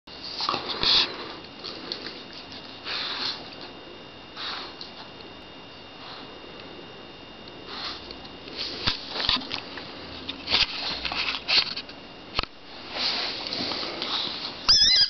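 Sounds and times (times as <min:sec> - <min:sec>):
dog sniffing and huffing: 0:00.2 - 0:03.6, 0:04.3 - 0:04.9, 0:07.6 - 0:09.0.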